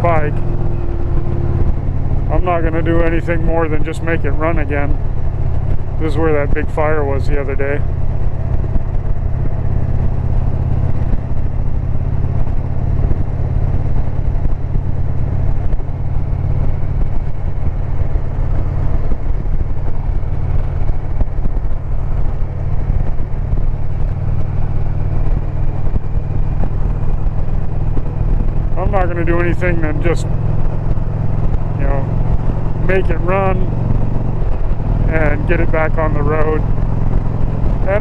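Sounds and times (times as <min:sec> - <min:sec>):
motorcycle engine cruising: 0:00.0 - 0:38.0.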